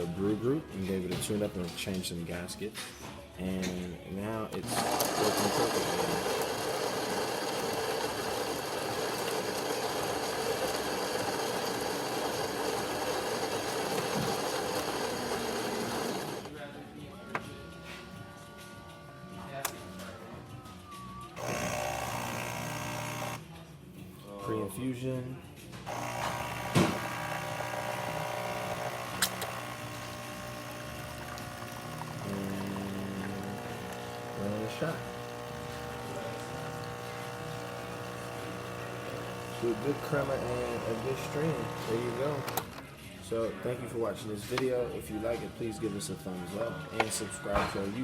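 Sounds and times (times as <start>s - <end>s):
coffee grinder grinding beans: 4.6s - 16.5s, 21.4s - 23.4s, 25.9s - 42.8s
espresso machine pump humming: 4.6s - 16.5s, 21.4s - 23.4s, 25.9s - 42.8s.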